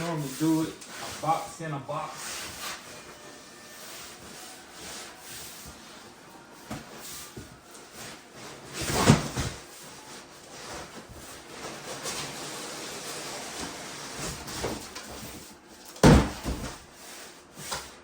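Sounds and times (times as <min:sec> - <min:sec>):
boxes scraping thud: 0:06.6 - 0:17.8.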